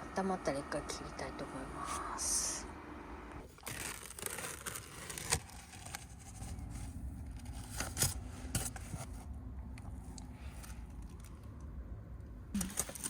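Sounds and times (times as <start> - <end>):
rustling of handling: 3.5 - 9.3.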